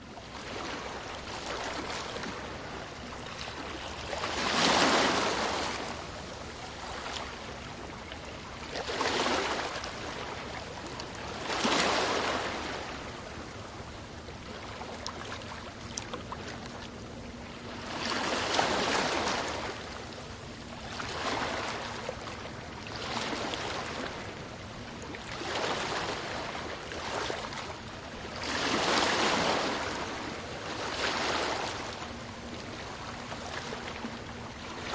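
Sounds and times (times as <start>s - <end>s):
sea waves washing in: 3.6s - 7.2s, 11.2s - 13.6s, 28.3s - 34.9s.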